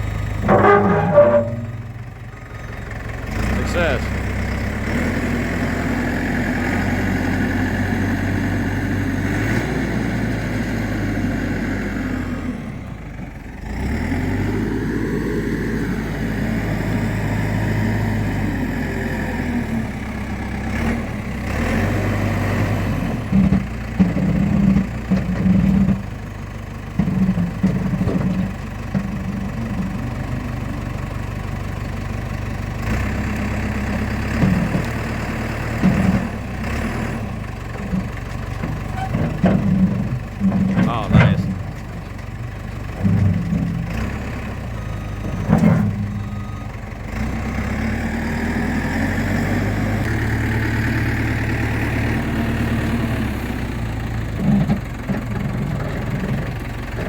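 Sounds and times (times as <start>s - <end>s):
engine running: 0.0s - 57.0s.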